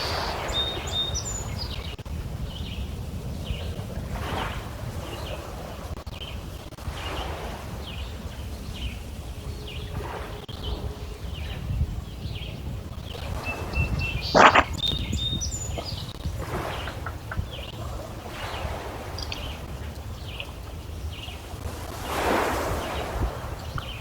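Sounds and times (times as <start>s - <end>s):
birds chirping: 0.0s - 2.8s, 7.8s - 21.6s
waves lapping against stones: 3.2s - 9.0s, 13.0s - 24.0s.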